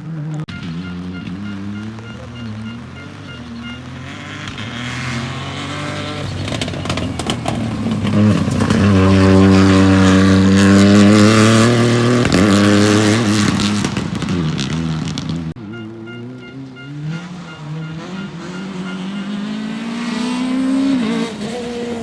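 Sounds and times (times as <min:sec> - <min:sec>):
rally car engine at full throttle: 0:00.0 - 0:22.0.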